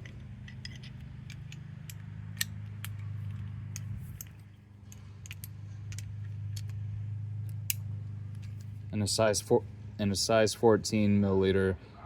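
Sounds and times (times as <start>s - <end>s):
metal sockets clinking: 0.0s - 6.8s
steady low hum: 0.0s - 12.0s.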